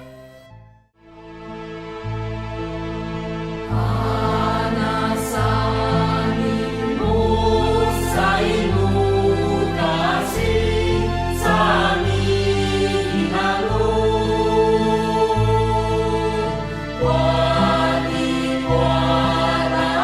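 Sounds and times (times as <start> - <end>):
choir singing held notes: 3.7 - 20.0.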